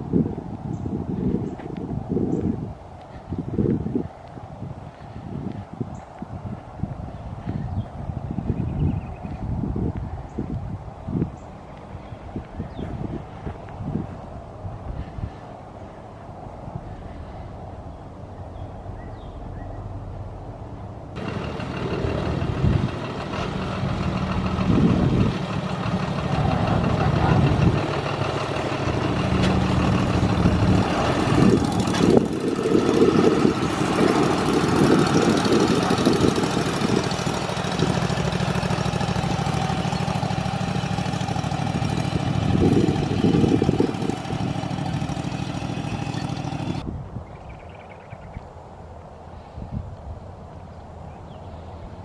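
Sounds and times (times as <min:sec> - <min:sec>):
vehicle engine running: 0:21.2 - 0:46.9.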